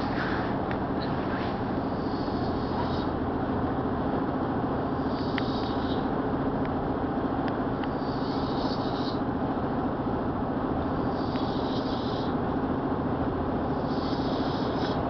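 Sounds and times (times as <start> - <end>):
breath hiss: 1.3 - 3.2, 4.8 - 6.1, 7.9 - 9.2, 10.9 - 12.4, 13.7 - 15.0
man snoring: 1.9 - 3.1, 7.9 - 9.2, 10.9 - 12.4, 13.6 - 15.0.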